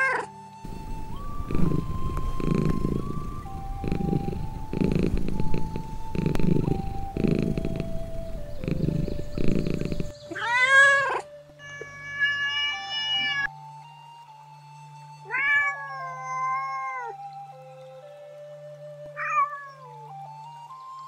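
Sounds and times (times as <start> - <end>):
cat meowing: 0.0 - 13.5, 15.3 - 17.2
soft background music: 0.0 - 21.0.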